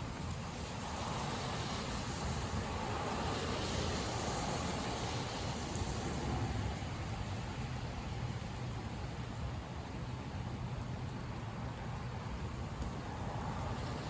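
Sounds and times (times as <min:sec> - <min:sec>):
tyres hissing on wet road: 0:00.0 - 0:09.1, 0:12.7 - 0:14.0.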